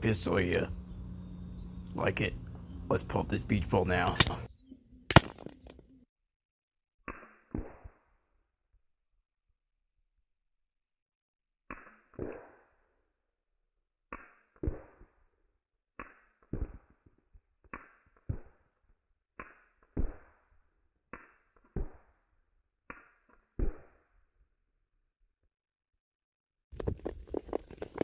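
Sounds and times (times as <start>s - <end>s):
pistol shots cracking: 5.1s - 5.6s.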